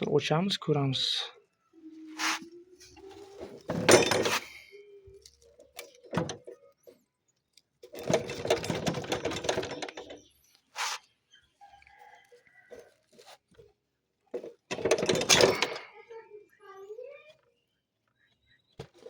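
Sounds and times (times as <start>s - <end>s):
metal clank: 3.7s - 4.6s.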